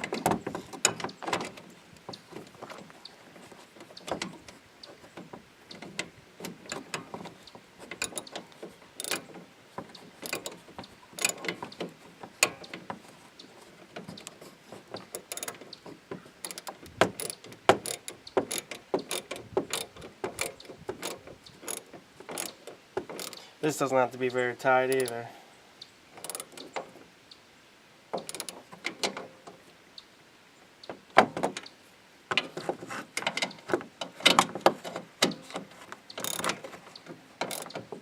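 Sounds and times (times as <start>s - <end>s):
ratchet wrench clicking: 9.0s - 9.2s, 10.2s - 10.6s, 11.2s - 11.5s, 15.2s - 15.6s, 16.4s - 22.6s, 23.2s - 23.4s, 26.2s - 26.7s, 28.2s - 28.6s, 36.2s - 36.6s, 37.4s - 37.8s.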